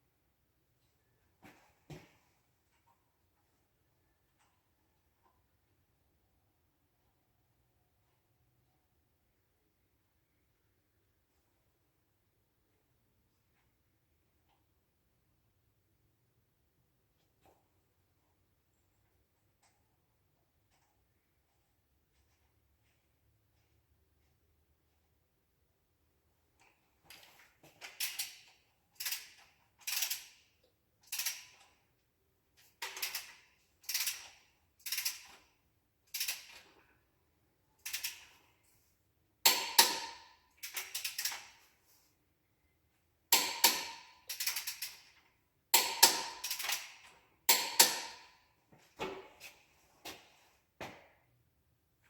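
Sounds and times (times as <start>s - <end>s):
hand ratchet clicking: 31.0s - 31.6s, 32.8s - 35.4s, 36.1s - 36.6s, 37.8s - 38.3s, 39.5s - 41.6s, 43.4s - 45.1s, 45.8s - 48.2s.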